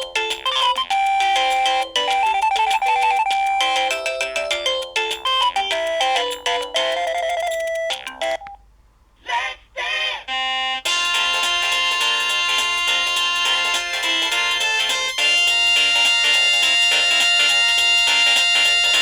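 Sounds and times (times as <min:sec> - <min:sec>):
polyphonic phone ringtone: 0:00.0 - 0:08.6, 0:10.5 - 0:19.0.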